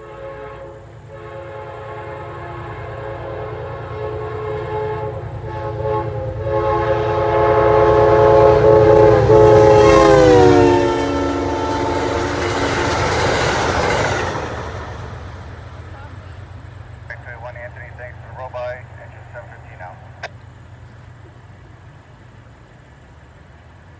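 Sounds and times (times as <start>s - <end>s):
locomotive air horn chord: 0.0s - 14.5s
train rumble: 0.0s - 23.9s.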